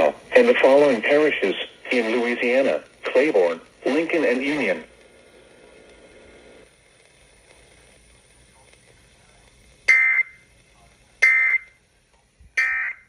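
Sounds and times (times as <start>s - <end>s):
low hiss: 0.0s - 13.0s
bursts of data tones: 9.9s - 10.4s, 11.2s - 11.7s, 12.6s - 13.0s.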